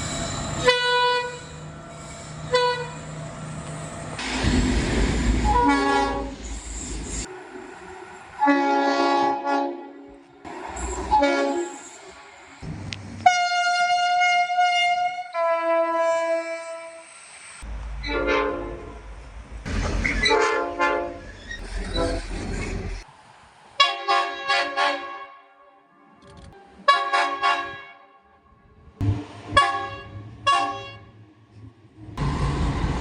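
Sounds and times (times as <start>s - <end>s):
train horn blasts: 0.6s - 1.7s, 2.5s - 3.0s, 5.4s - 6.4s, 8.4s - 10.2s, 11.1s - 11.8s, 13.2s - 17.0s, 18.0s - 19.0s, 20.3s - 21.2s, 23.8s - 31.2s.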